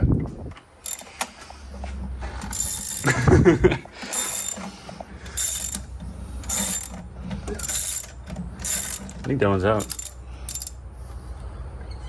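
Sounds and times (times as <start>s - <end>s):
ratchet wrench clicking: 0.8s - 1.3s, 2.5s - 3.2s, 4.1s - 4.7s, 5.3s - 9.2s, 9.8s - 10.8s.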